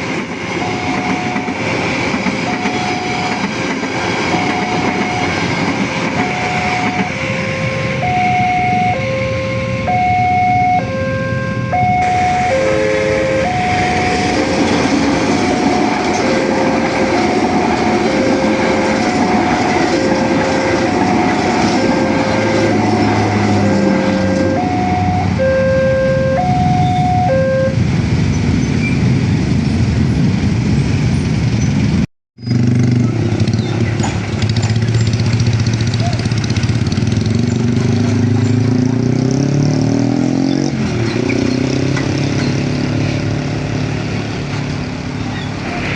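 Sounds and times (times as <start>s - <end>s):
heavy traffic rumble: 0.0s - 45.9s
two-tone level-crossing alarm: 0.6s - 1.8s, 2.4s - 3.6s, 4.2s - 27.8s.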